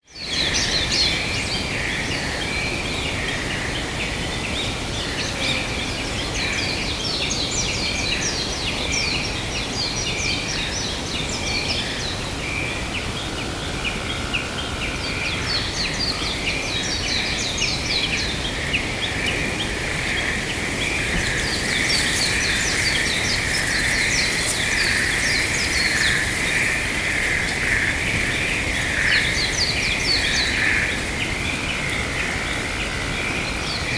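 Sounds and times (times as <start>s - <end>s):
small birds chirping: 15.5s - 33.9s.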